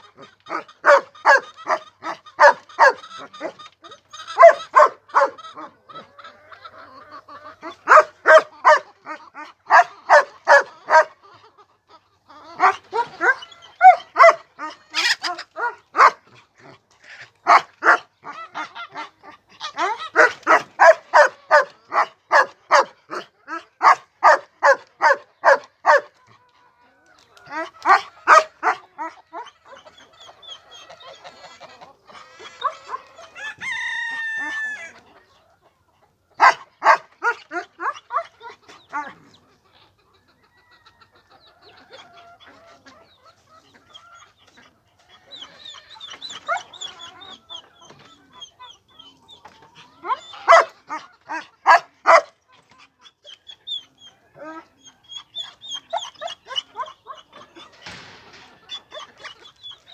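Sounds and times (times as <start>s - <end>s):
chickens clucking: 0.0s - 59.9s
rooster crowing: 33.3s - 35.0s.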